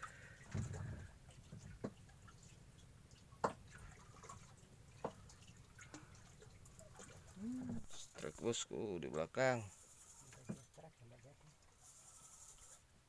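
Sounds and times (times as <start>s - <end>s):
water drips: 0.0s - 8.2s.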